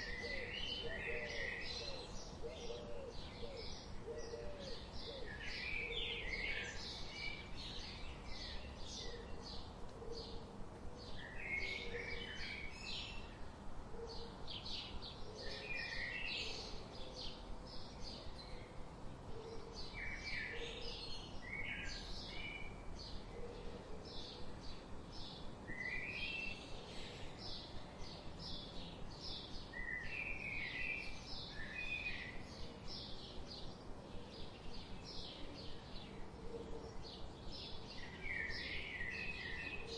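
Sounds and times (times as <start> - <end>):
outdoor background hiss: 0.0 - 39.9
songbirds chirping and singing: 0.0 - 39.9.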